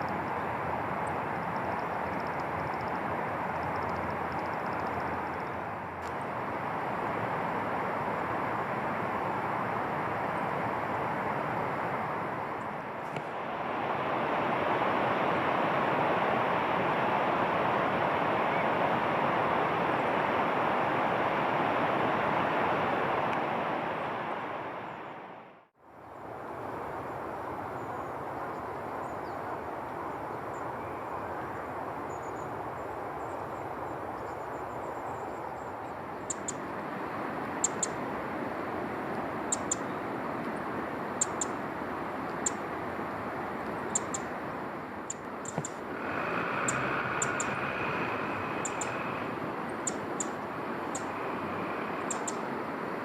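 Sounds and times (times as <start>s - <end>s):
steady rushing noise: 0.0s - 27.7s, 32.6s - 53.0s.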